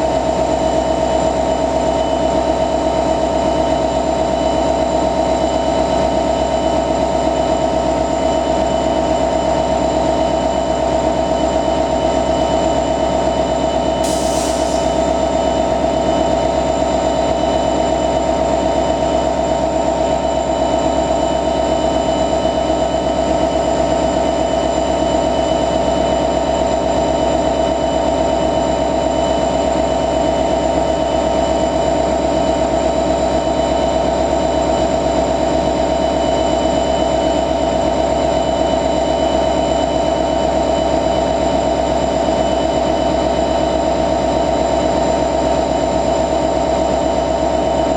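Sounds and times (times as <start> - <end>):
diesel locomotive idling: 0.0 - 47.9
short hiss: 14.0 - 15.0.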